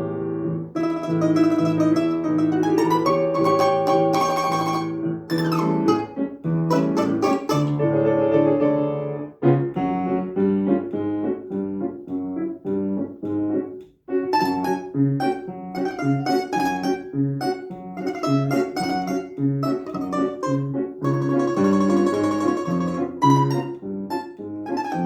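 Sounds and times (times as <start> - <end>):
piano playing: 0.0 - 25.0
plucked string instrument: 0.7 - 8.9, 14.3 - 25.0.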